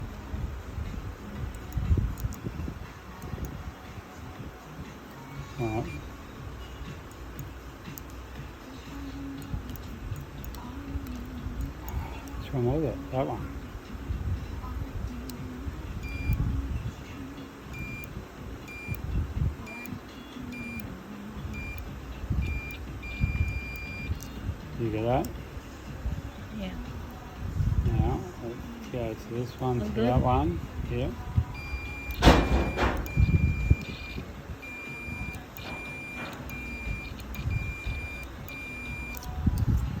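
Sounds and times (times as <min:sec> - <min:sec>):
multimeter continuity beeps: 0:05.6 - 0:06.1, 0:15.3 - 0:16.5, 0:17.7 - 0:25.4, 0:31.5 - 0:39.4
short high electronic beeps: 0:31.6 - 0:39.2.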